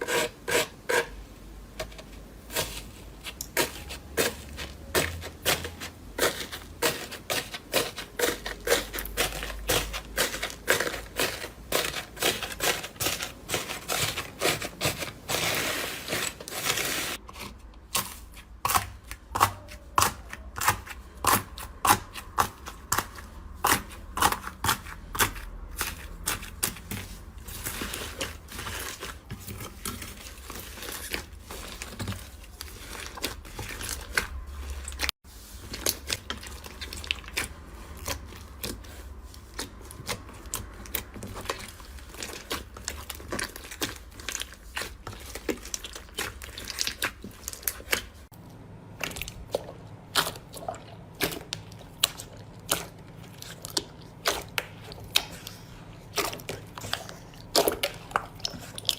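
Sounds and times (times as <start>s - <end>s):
crunchy material being crushed: 2.4s - 58.9s.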